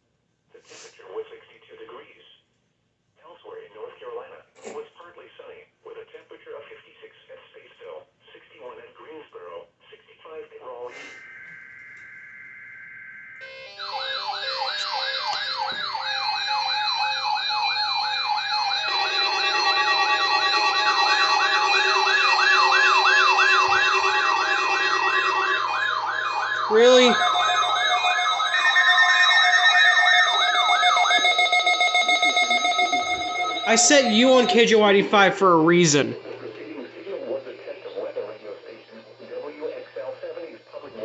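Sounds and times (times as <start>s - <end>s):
siren-like warbling alarms: 11.1s - 39.8s
steady beeping tones: 11.2s - 36.3s.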